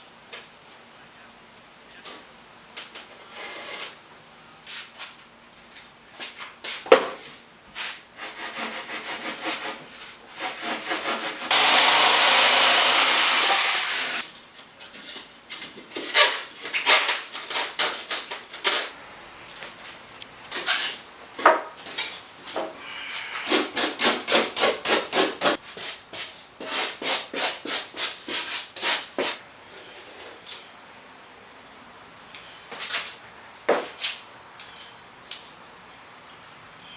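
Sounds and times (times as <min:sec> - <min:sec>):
tool scraping on foam: 0:07.8 - 0:14.2.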